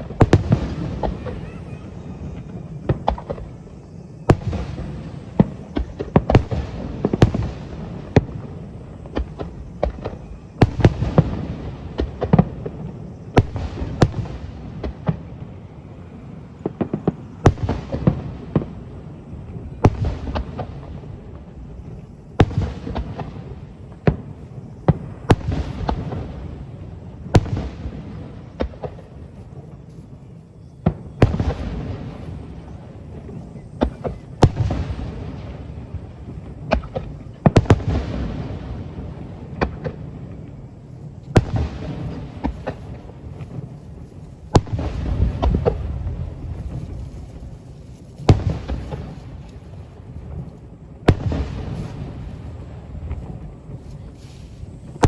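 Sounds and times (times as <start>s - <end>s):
firework rumble and crackle: 0.0s - 55.0s.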